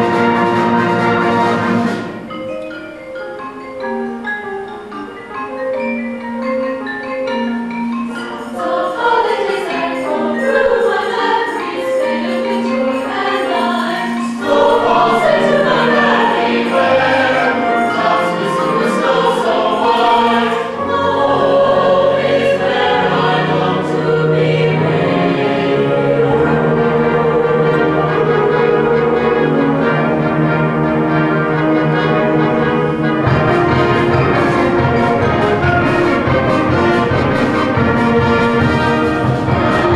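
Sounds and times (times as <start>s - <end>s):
brass instruments: 0.0s - 39.9s
concert band playing held chords: 0.0s - 39.9s
mallet percussion ringing: 2.0s - 31.2s
concert band playing slow chords: 23.6s - 39.9s.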